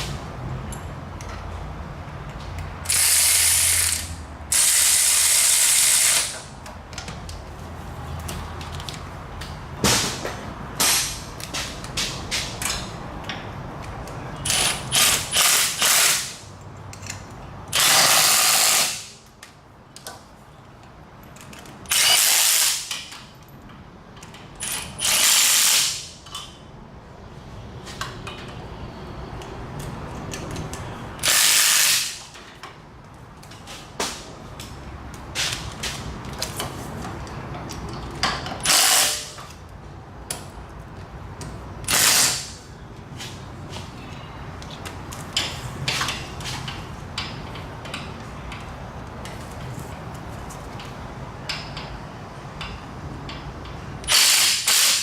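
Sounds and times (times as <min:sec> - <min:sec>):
air ratchet running: 0:02.8 - 0:06.5, 0:14.4 - 0:16.5, 0:17.7 - 0:19.2, 0:21.9 - 0:23.1, 0:24.6 - 0:26.3, 0:31.2 - 0:32.3, 0:38.6 - 0:39.5, 0:41.8 - 0:42.7, 0:54.0 - 0:55.0.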